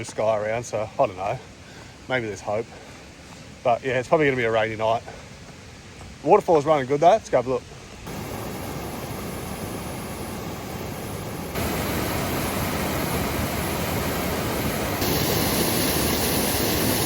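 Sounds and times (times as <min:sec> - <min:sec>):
waterfall rushing: 0:08.1 - 0:17.0.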